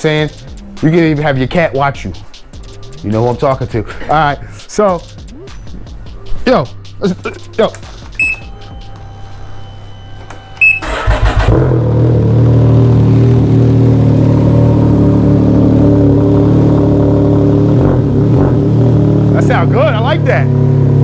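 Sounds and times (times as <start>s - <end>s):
short beep: 8.2s - 8.6s, 9.6s - 11.1s
engine starting and idling: 10.6s - 14.1s.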